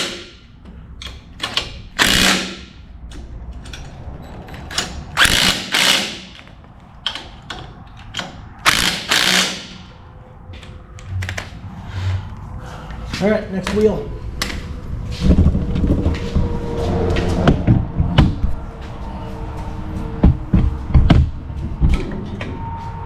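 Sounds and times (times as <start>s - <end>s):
impact driver bursts: 2.0s - 2.8s, 5.2s - 6.5s, 8.7s - 9.9s.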